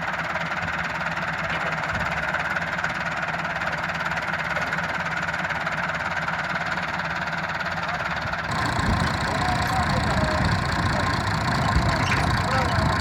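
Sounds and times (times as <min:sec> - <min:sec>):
tractor diesel engine running: 0:00.0 - 0:13.0
steady high whine: 0:08.5 - 0:13.0.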